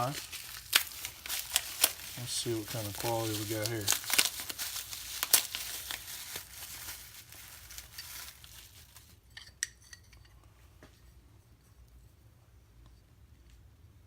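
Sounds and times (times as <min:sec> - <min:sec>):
packaging crinkling: 0:00.0 - 0:09.2.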